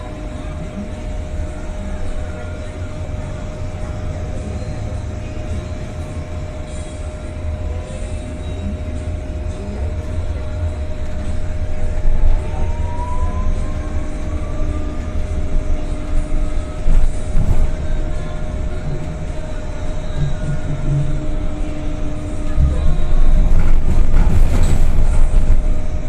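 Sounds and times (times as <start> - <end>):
bus low rumble: 0.0 - 26.0
rising motor whine: 10.3 - 24.2.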